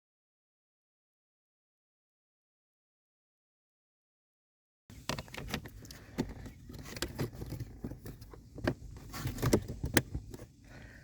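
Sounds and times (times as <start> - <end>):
plastic parts clicking and knocking: 4.9 - 10.5.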